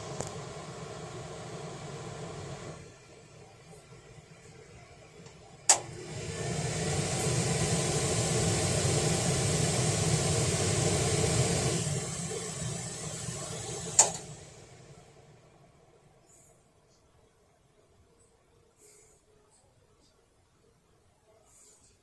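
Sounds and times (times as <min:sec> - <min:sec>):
range hood fan whooshing: 0:00.0 - 0:16.0
fan switch click: 0:05.7 - 0:06.0, 0:13.9 - 0:14.3.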